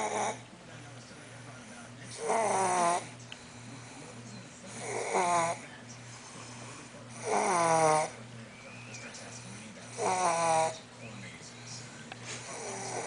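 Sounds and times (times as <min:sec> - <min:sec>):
snoring: 0:00.0 - 0:00.4, 0:02.1 - 0:08.2, 0:09.4 - 0:10.8, 0:12.3 - 0:13.0.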